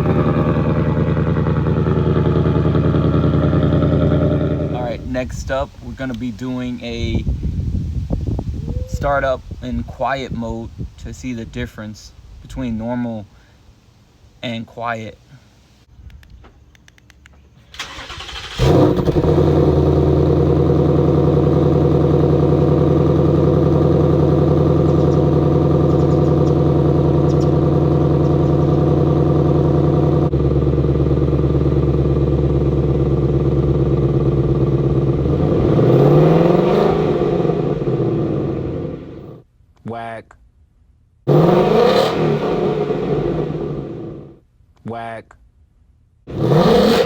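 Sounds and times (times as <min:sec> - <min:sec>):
engine revving: 0:00.0 - 0:05.4, 0:17.8 - 0:39.4, 0:41.3 - 0:44.4, 0:46.3 - 0:47.0
car engine starting and idling: 0:00.0 - 0:06.9, 0:17.6 - 0:39.4, 0:41.3 - 0:44.4, 0:46.3 - 0:47.0.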